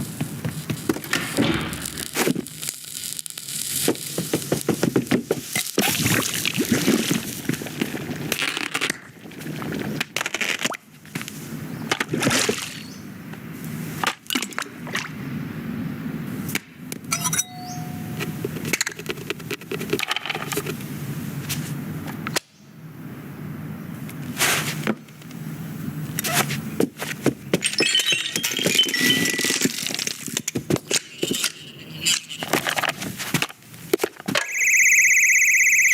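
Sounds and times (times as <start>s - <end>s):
short pitched beep: 17.2s - 18.4s, 34.4s - 35.9s.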